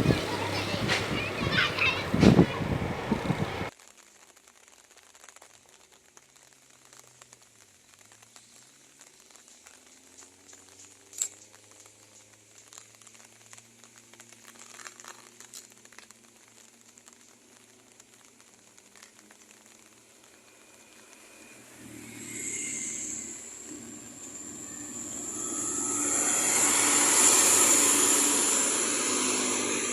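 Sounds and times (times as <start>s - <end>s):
distant vehicle engines hum: 0.0s - 3.7s, 9.5s - 14.5s, 19.2s - 29.9s
faint hiss: 0.0s - 29.9s.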